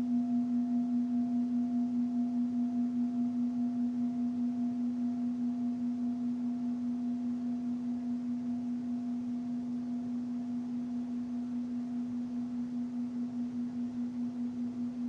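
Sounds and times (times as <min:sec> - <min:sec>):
singing bowl humming: 0:00.0 - 0:15.0.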